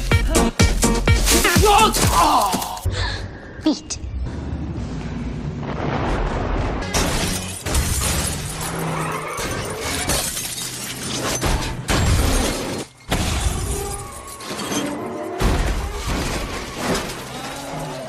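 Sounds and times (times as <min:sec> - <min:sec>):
music: 0:00.0 - 0:03.6
glass shattering: 0:01.2 - 0:02.8, 0:06.9 - 0:18.0.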